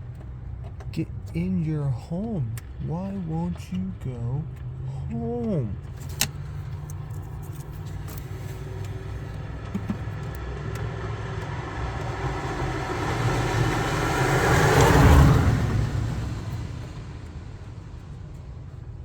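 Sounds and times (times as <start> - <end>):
steady low rumble: 0.0 - 9.4
car driving past: 7.4 - 17.1.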